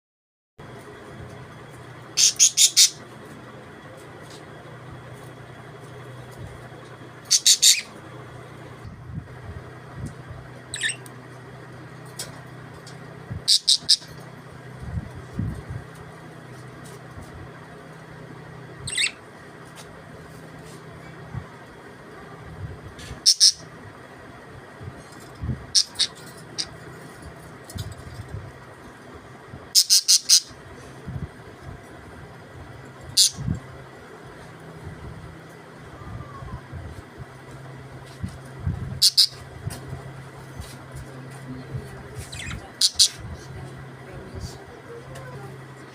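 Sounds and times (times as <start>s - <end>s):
steady low hum: 0.6s - 45.9s
budgerigars chirping: 2.1s - 3.0s, 7.2s - 8.0s, 10.7s - 11.0s, 13.4s - 14.2s, 18.9s - 19.2s, 23.2s - 23.7s, 25.7s - 26.8s, 29.8s - 30.6s, 33.1s - 33.4s, 39.0s - 39.4s, 42.2s - 43.2s.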